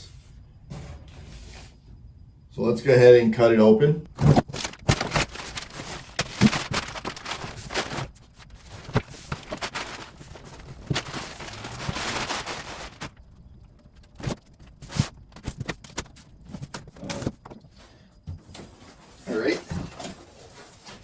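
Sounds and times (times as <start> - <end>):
cardboard scraping and rustling: 4.1 - 17.8, 18.4 - 21.0.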